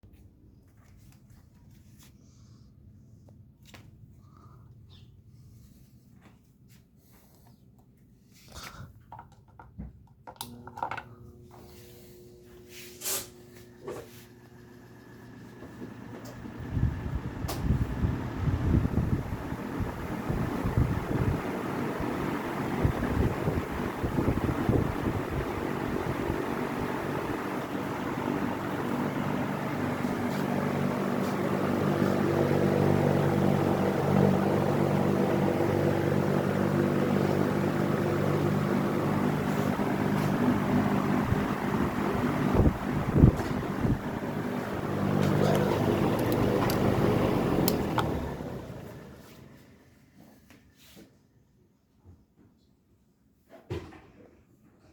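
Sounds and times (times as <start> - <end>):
fan motor hum: 0.1 - 50.6
fan switch clicks: 17.4 - 17.8, 45.2 - 48.4.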